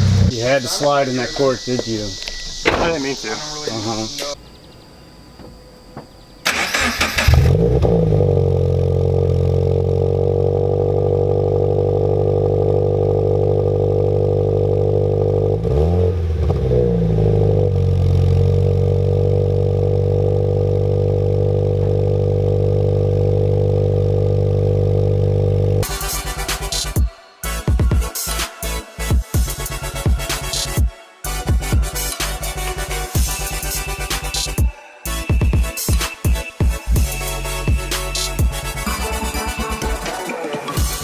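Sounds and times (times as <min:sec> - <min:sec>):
car engine droning: 0:00.0 - 0:25.9.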